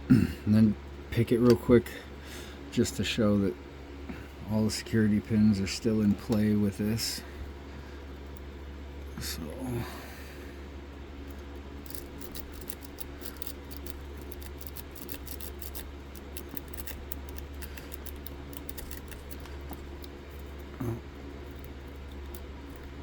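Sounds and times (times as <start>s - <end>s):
low hum: 1.8s - 23.0s
lock pick clicking and scraping: 11.2s - 20.7s.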